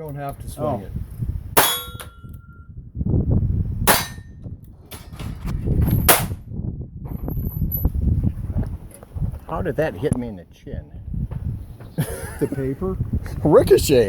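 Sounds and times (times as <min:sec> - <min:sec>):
steel target ringing: 0:01.6 - 0:02.7, 0:03.9 - 0:04.4.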